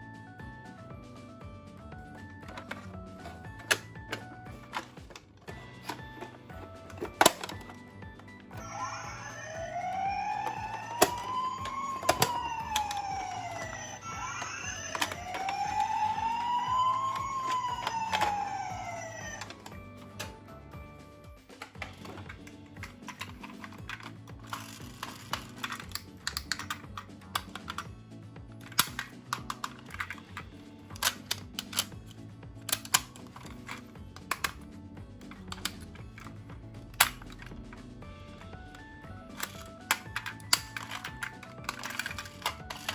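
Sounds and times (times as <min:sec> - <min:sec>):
music: 0:00.0 - 0:42.9
toy car clicking and clacking: 0:02.5 - 0:20.3, 0:21.5 - 0:27.9, 0:28.6 - 0:32.0, 0:32.6 - 0:34.6, 0:35.2 - 0:37.8, 0:39.3 - 0:42.9
toy siren wailing: 0:08.4 - 0:19.8.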